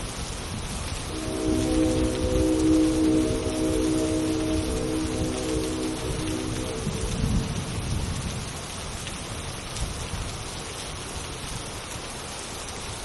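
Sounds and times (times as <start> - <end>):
steady rain: 0.0 - 13.0
low thunder rumble: 0.6 - 9.0.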